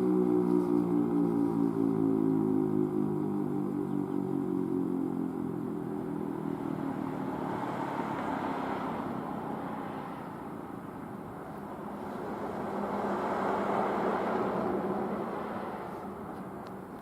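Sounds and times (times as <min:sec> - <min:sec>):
vehicle passing: 0:06.2 - 0:17.0.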